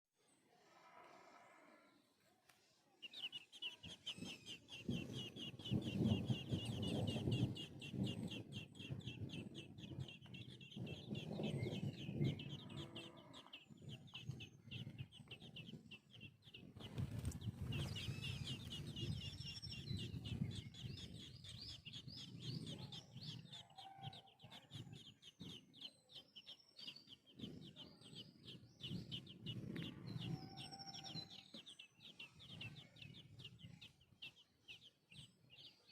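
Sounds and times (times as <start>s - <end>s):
baby birds cheeping: 2.5s - 35.9s.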